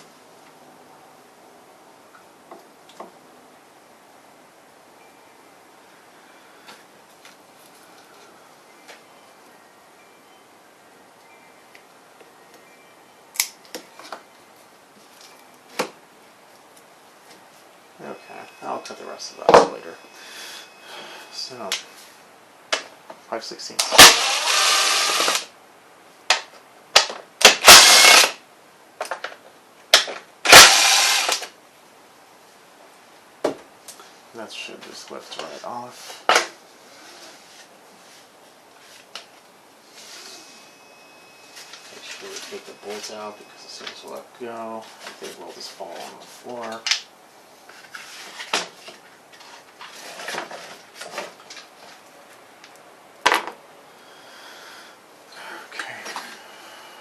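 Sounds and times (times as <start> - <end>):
power driver spinning: 23.8 - 25.5, 27.5 - 28.4, 30.5 - 31.5.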